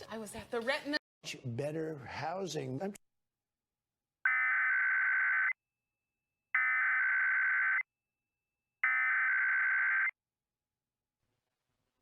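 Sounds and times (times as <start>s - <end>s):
two-tone warbling data burst: 4.3s - 5.6s, 6.6s - 7.8s, 8.8s - 10.1s.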